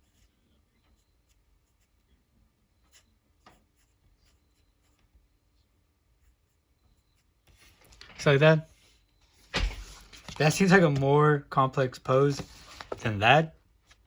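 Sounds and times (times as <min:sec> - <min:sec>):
pen scratching on paper: 0:00.0 - 0:02.1, 0:02.8 - 0:05.2, 0:06.1 - 0:09.1.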